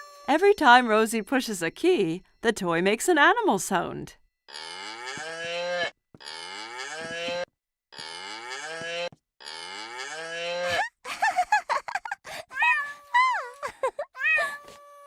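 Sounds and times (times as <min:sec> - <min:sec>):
toy keyboard cow moo: 0:08.0 - 0:10.7.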